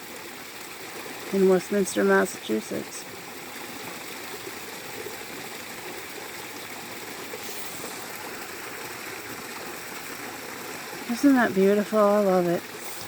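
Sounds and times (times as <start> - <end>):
small waterfall rushing over rocks: 0.0 - 13.0.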